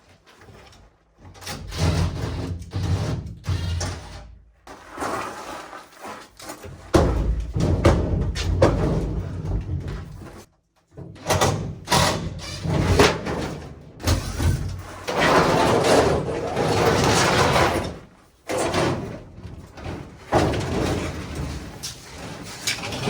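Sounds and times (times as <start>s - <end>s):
metal knocks bangs and clatter: 6.7s - 23.0s.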